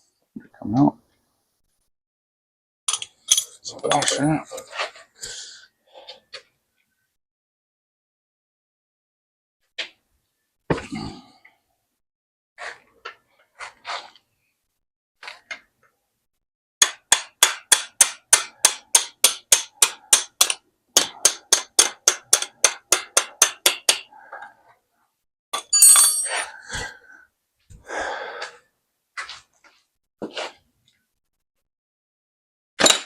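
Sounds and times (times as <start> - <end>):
metal part clattering: 25.6 - 26.5.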